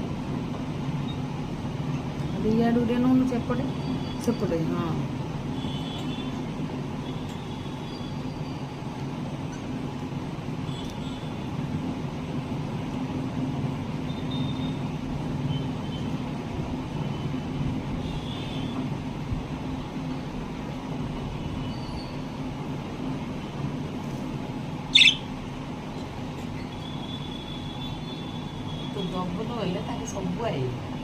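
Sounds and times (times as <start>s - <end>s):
low mechanical hum: 0.0s - 31.0s
caged birds chirping: 24.6s - 28.9s.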